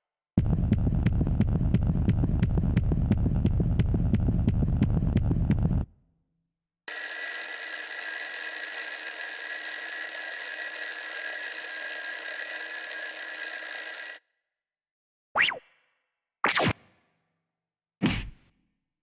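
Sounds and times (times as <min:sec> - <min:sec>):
alarm bell ringing: 0:06.9 - 0:14.2.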